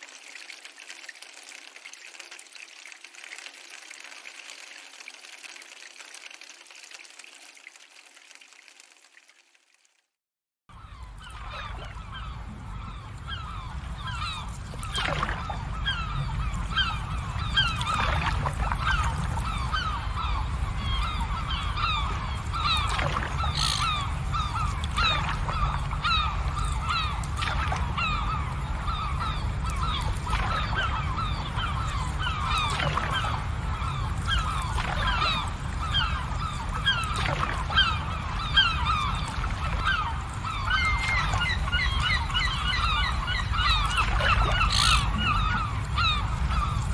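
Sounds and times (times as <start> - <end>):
flock of birds calling: 10.8 - 46.9
low steady rumble: 10.8 - 46.9.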